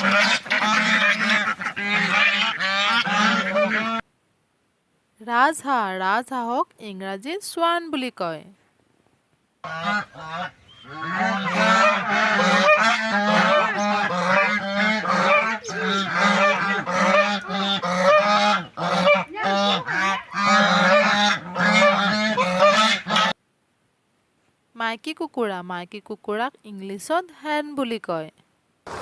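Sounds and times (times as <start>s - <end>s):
swans honking: 0.0s - 4.1s, 9.6s - 23.4s.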